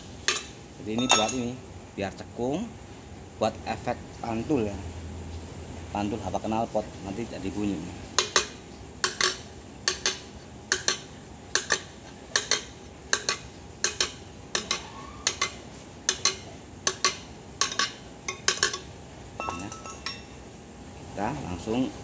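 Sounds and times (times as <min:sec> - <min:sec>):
pipe hammering metal casing: 0:00.2 - 0:01.6, 0:08.2 - 0:20.4.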